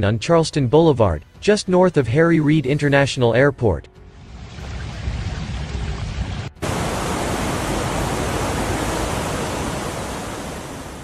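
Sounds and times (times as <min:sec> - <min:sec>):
rushing water: 0:04.3 - 0:11.0.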